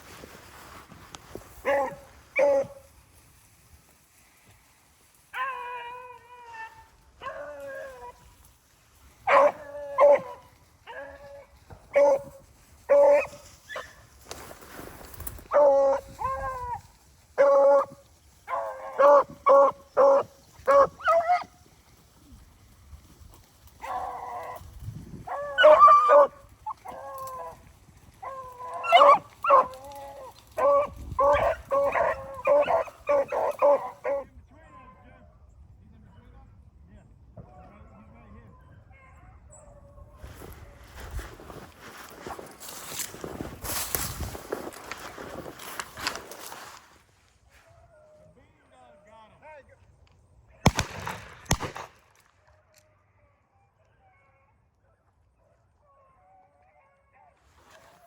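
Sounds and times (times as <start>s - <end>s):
hounds barking and baying: 1.6s - 2.9s, 5.3s - 8.4s, 9.2s - 14.0s, 15.4s - 21.8s, 23.3s - 35.0s, 38.5s - 40.2s, 52.8s - 58.0s.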